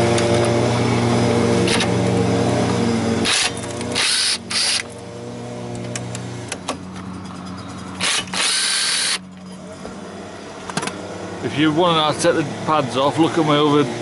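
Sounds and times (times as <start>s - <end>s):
power tool undoing bolts: 0.0s - 5.0s, 7.8s - 9.5s.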